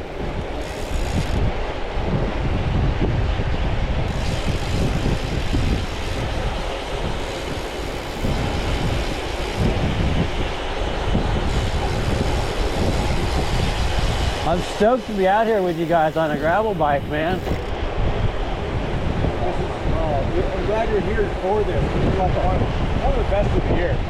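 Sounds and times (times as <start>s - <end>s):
wind rushing: 0.0s - 24.0s
bike tyres rumbling on pavement: 4.0s - 19.6s.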